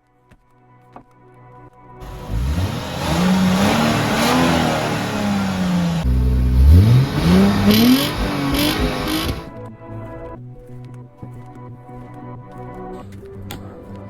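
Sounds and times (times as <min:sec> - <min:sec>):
car engine revving: 0:02.0 - 0:09.5.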